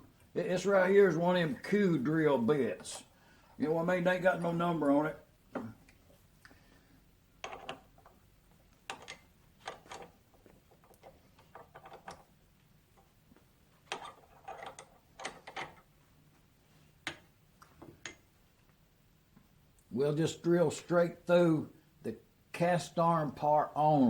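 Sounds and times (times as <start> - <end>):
metal clicks and clunks: 7.4 - 8.2, 8.8 - 12.3, 13.8 - 15.9, 17.0 - 18.3.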